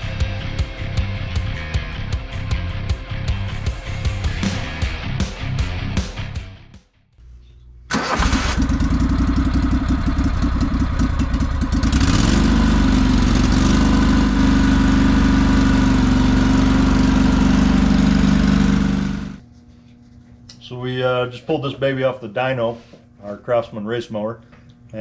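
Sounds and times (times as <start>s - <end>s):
mower engine starting and revving: 7.9s - 19.4s.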